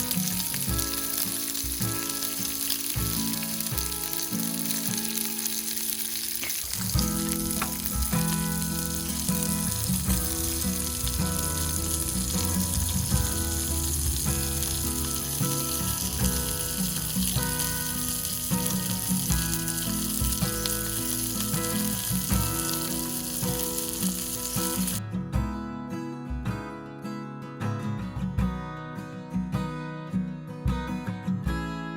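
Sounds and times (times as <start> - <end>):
steak sizzling: 0.0 - 25.0
soft background music: 0.0 - 26.8.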